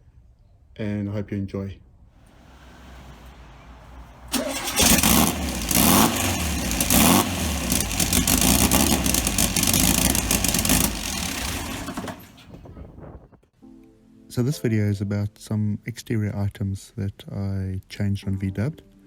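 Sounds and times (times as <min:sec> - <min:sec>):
car engine starting and revving: 0:02.2 - 0:13.0.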